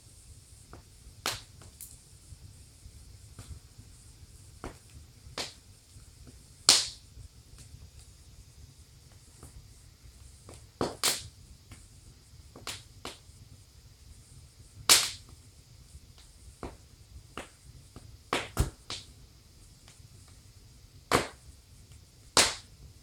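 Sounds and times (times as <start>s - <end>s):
faint hiss: 0.0s - 23.0s
wood fire crackling: 0.0s - 23.0s.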